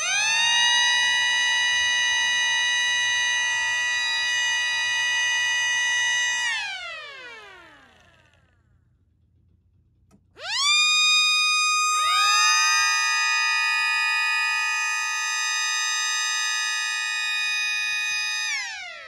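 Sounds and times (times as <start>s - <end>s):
click: 10.0s - 10.3s.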